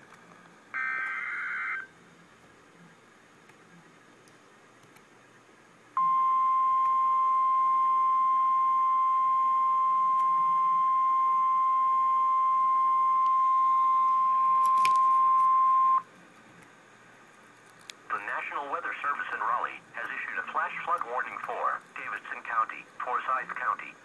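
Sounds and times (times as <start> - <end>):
alarm tone beep: 6.0 - 16.0.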